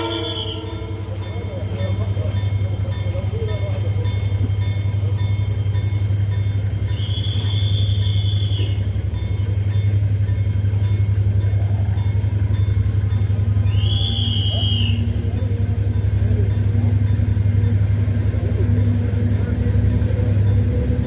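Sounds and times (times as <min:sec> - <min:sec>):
diesel locomotive engine drone: 0:00.0 - 0:21.0.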